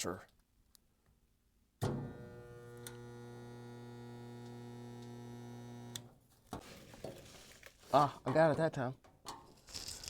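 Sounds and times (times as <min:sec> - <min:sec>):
spot welder humming: 0:01.9 - 0:06.1.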